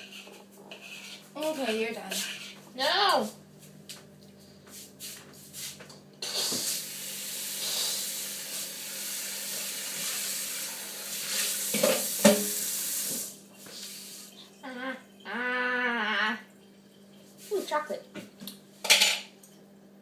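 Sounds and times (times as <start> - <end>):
tap running water into sink: 11.1 - 13.3.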